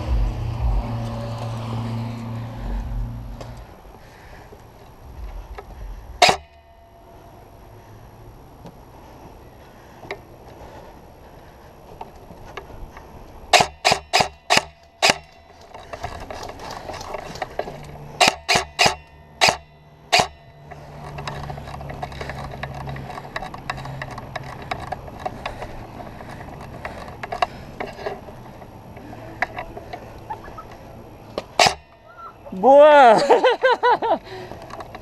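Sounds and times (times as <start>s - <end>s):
airsoft gun firing shots: 13.5s - 15.4s
rustling: 14.8s - 18.1s.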